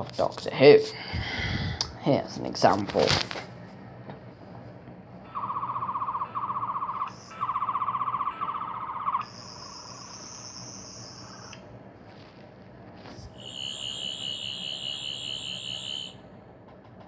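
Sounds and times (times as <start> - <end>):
high steady electronic whine: 4.0 - 16.5
warbling electronic buzz: 5.2 - 11.7, 13.0 - 16.2.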